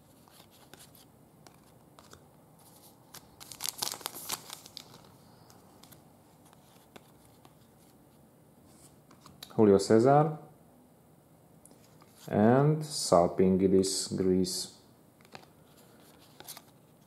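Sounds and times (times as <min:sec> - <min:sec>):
foil wrapper crinkling and tearing: 0:02.7 - 0:05.1.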